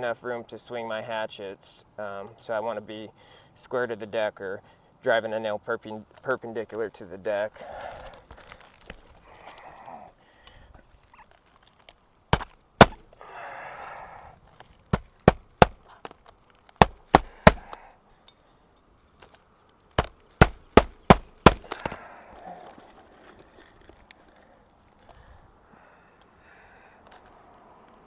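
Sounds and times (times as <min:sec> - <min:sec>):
hatchet hammering nails: 0:12.3 - 0:13.1, 0:14.9 - 0:15.9, 0:16.8 - 0:17.8, 0:20.0 - 0:22.0.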